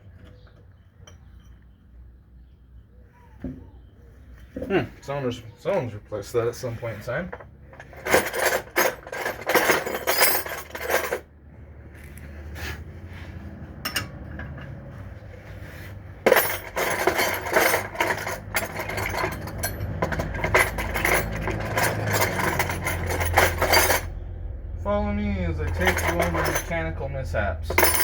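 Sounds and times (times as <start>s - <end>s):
metal hand tools clinking: 7.1s - 11.2s, 13.9s - 14.8s, 16.2s - 24.1s, 25.6s - 27.0s, 27.7s - 28.0s.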